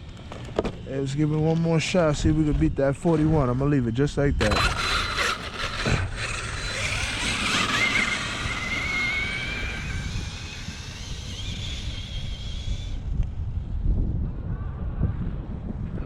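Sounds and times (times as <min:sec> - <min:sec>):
wind rumbling on microphone: 0:00.0 - 0:16.0
rc truck motor whining: 0:02.2 - 0:13.7.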